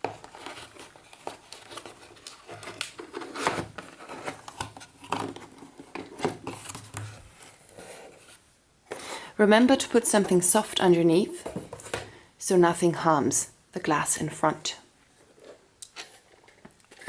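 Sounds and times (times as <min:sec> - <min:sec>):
scrapes and light knocks: 0:00.0 - 0:09.3, 0:15.2 - 0:17.0
packaging rustling and crinkling: 0:00.0 - 0:10.8.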